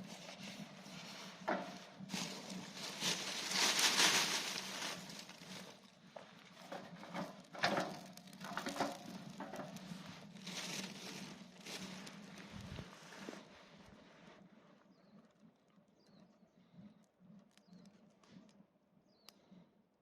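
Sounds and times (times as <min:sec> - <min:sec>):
dry tinder crunching: 0:02.0 - 0:13.2.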